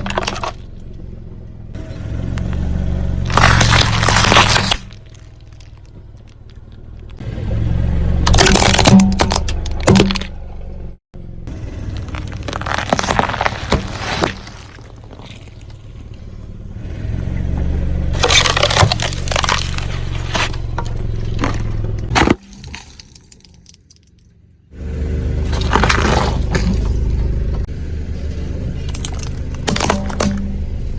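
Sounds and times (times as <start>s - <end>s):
tyre crushing objects: 0.0s - 0.7s, 3.3s - 6.4s, 8.3s - 10.3s, 11.8s - 15.8s, 18.2s - 23.9s, 25.4s - 27.0s
car engine rumble: 0.0s - 30.9s.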